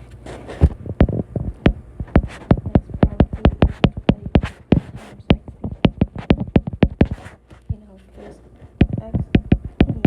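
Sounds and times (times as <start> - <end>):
pen tapping and clicking: 1.0 - 7.3, 8.8 - 10.0
pen scratching strokes: 2.1 - 7.4.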